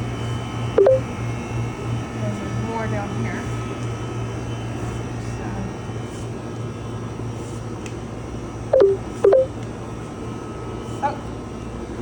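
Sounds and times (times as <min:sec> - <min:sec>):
compressor drone: 0:00.0 - 0:12.0
faint high tones: 0:00.8 - 0:01.1, 0:08.8 - 0:09.5.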